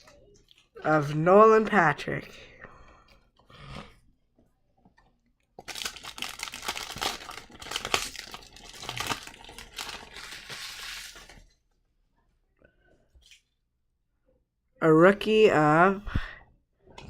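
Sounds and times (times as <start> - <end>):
wrapper crinkling and tearing: 5.6 - 11.5.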